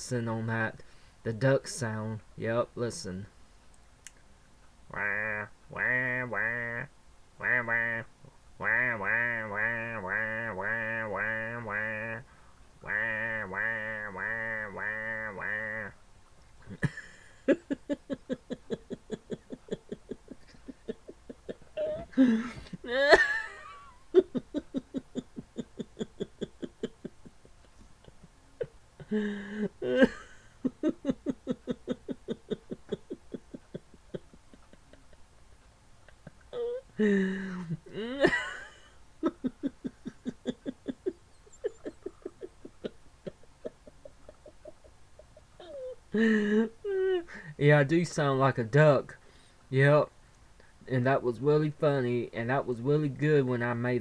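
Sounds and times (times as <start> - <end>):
man imitating duck quack: 4.9 - 12.2, 12.8 - 16.0
rapid rhythmic laughter: 16.6 - 47.6
squealing laugh: 16.7 - 35.4, 36.0 - 47.5.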